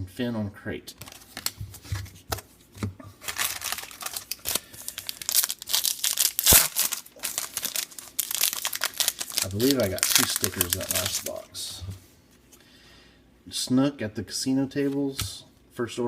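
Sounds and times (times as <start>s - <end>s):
wrapper tearing and crinkling: 3.2s - 11.4s.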